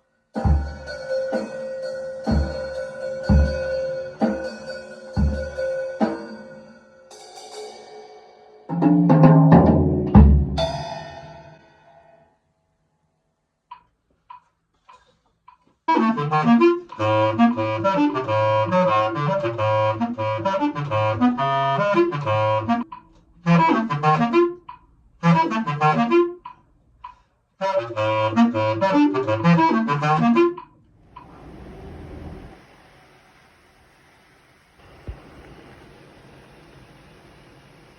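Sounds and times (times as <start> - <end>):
bass clarinet playing low runs: 15.9 - 26.5, 27.6 - 32.6.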